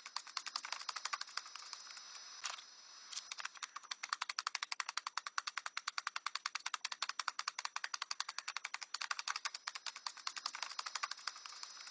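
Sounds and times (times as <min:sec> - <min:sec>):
parrot tapping rapidly: 0:00.0 - 0:02.1, 0:03.2 - 0:11.9.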